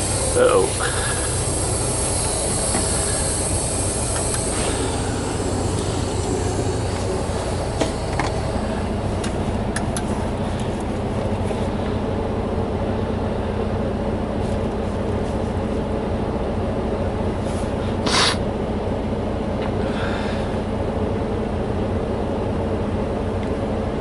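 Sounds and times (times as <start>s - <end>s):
air hiss: 0.0s - 10.8s, 17.6s - 18.4s
diesel truck engine idling: 0.0s - 24.0s.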